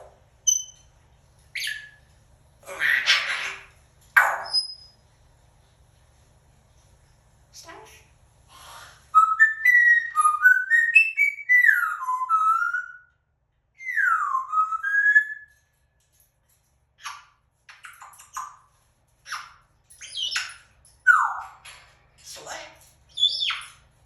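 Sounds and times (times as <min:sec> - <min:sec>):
parrot chirps and clicks: 0:00.5 - 0:05.0, 0:09.4 - 0:24.0
parrot whistling: 0:08.8 - 0:13.1, 0:13.8 - 0:15.5.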